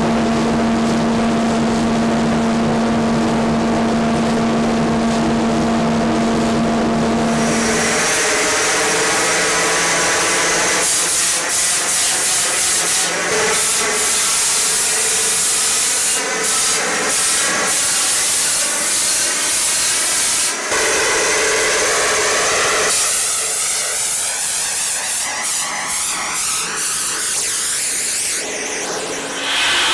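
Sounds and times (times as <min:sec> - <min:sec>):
sanding machine on steel: 0:07.3 - 0:21.6, 0:29.3 - 0:29.9.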